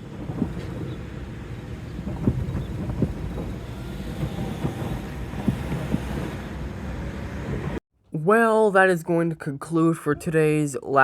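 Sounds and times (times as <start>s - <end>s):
freight train rumbling past: 0.0s - 7.8s
wheels knocking and clanking: 0.0s - 7.8s.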